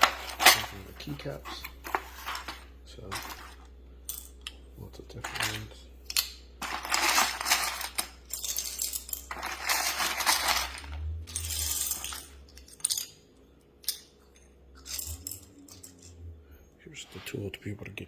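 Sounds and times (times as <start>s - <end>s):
plastic keycaps clattering: 5.2s - 13.1s.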